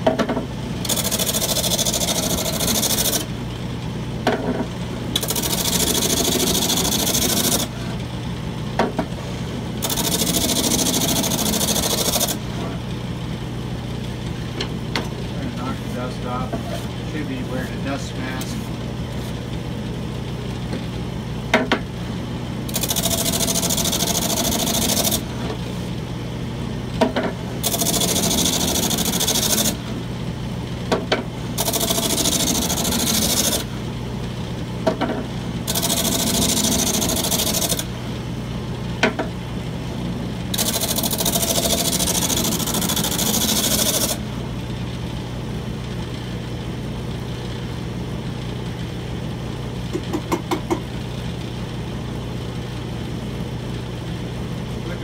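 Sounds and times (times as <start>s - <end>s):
wood lathe motor running: 0.8s - 3.3s, 5.1s - 8.0s, 9.8s - 12.8s, 22.7s - 25.3s, 27.6s - 29.9s, 31.6s - 33.7s, 35.6s - 37.9s, 40.5s - 44.2s.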